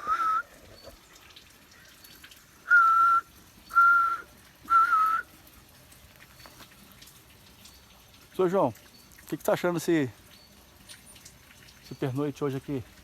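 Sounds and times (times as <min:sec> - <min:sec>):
person whistling bird call: 0:00.0 - 0:00.6, 0:02.7 - 0:05.3.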